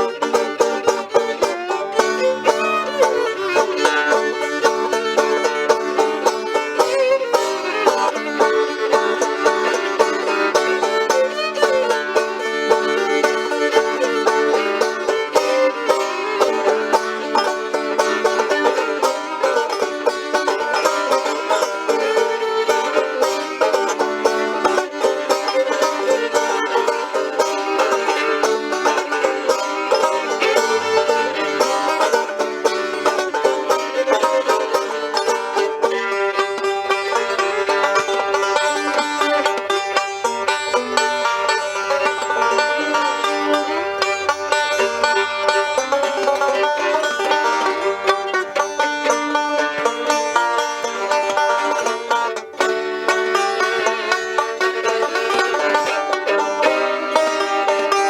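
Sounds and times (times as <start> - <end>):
acoustic bluegrass string music: 0.0 - 58.0.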